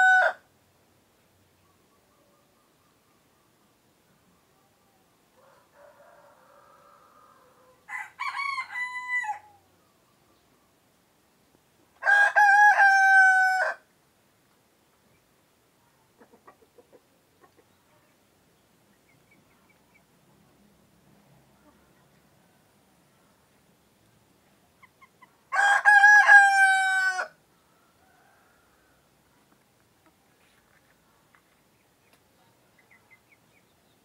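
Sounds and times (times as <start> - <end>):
roosters crowing: 0.0 - 0.5, 5.4 - 9.7, 12.0 - 13.9, 25.5 - 29.1
faint chicken clucks: 1.4 - 12.0, 14.4 - 20.7, 21.3 - 23.5, 24.4 - 25.6, 27.4 - 34.0.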